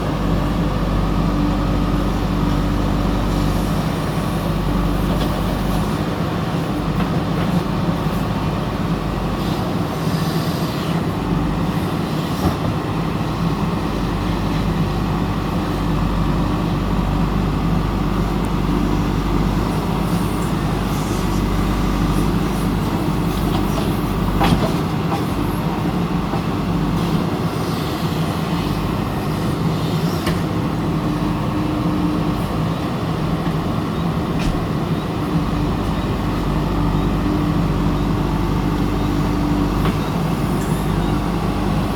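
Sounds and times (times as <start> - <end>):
heavy diesel engine running: 0.0 - 41.9.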